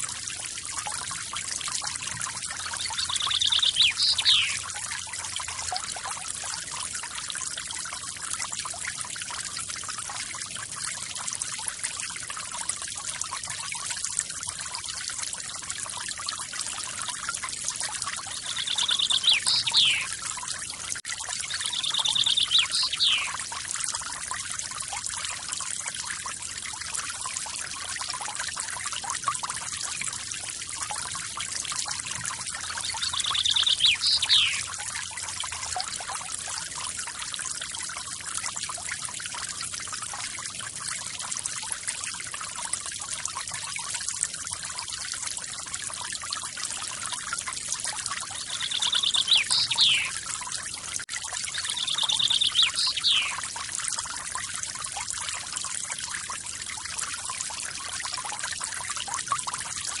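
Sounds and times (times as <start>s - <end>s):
small bird trilling call: 2.8s - 4.6s, 18.4s - 20.1s, 21.5s - 23.4s, 32.8s - 34.7s, 48.4s - 50.2s, 51.5s - 53.4s.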